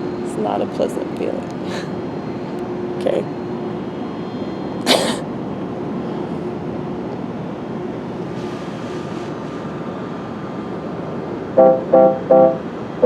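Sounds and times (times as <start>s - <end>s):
low rumbling background noise: 0.0s - 13.0s
loud pitched musical notes: 11.6s - 12.7s.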